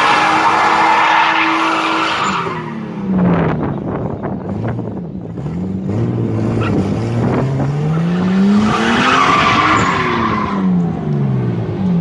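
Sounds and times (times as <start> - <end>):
car engine revving: 4.4 - 12.0.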